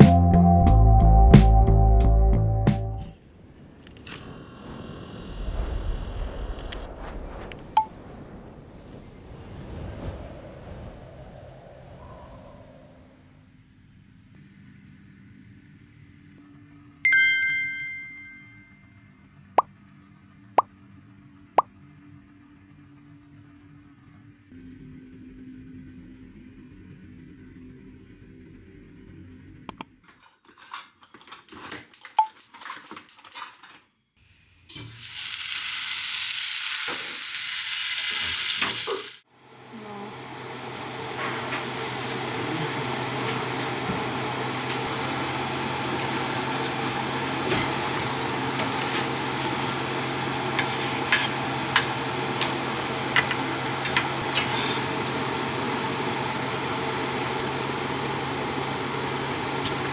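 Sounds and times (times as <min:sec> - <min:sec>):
low hum: 0:00.0 - 0:14.1
running water hissing: 0:03.2 - 0:14.1, 0:34.4 - 0:39.3, 0:44.6 - 0:58.2
food sizzling in a pan: 0:34.5 - 0:39.2, 0:45.2 - 0:57.7.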